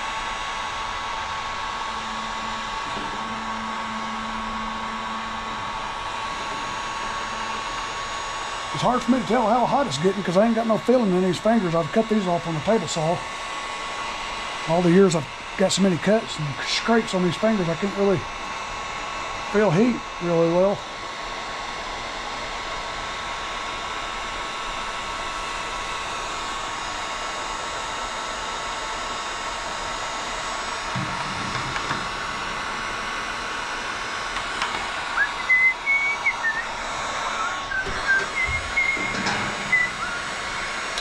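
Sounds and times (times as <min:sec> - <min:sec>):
heat gun blowing hiss: 0:29.4 - 0:41.0
short high-pitched squeaks: 0:37.3 - 0:40.7.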